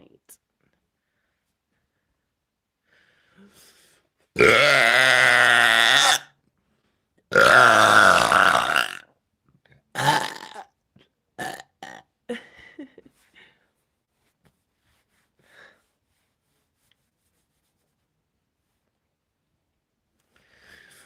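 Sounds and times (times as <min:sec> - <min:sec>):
woman burping loudly: 0:04.4 - 0:06.3, 0:07.3 - 0:09.1, 0:09.9 - 0:10.8, 0:11.4 - 0:12.2.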